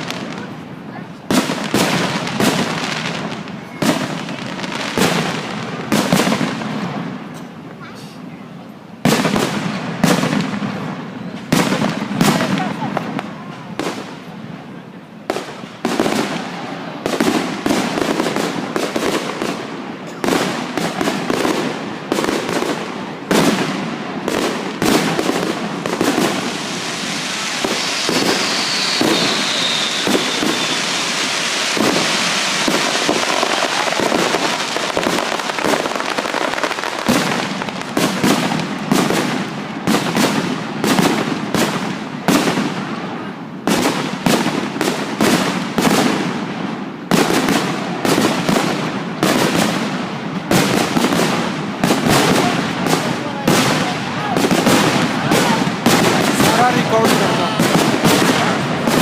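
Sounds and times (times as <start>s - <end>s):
fireworks bangs and pops: 0.0s - 8.3s, 8.9s - 59.0s
fireworks crackling: 0.0s - 59.0s
falling whistle: 27.4s - 31.1s.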